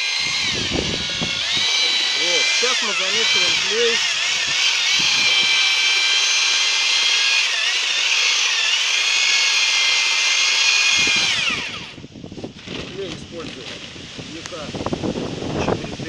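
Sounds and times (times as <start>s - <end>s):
drill-mixer motor whining: 0.0s - 14.5s.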